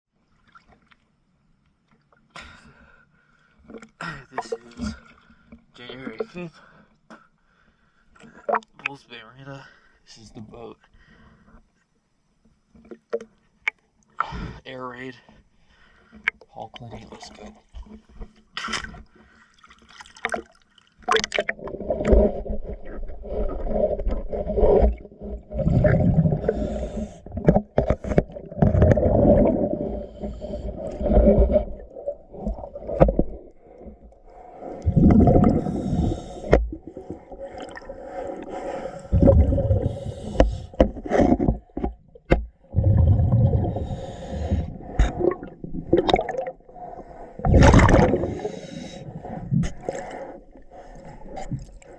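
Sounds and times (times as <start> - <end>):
underwater regulator bubbling exhalations: 21.0 - 50.6
scraping against boat hull: 40.3 - 42.6.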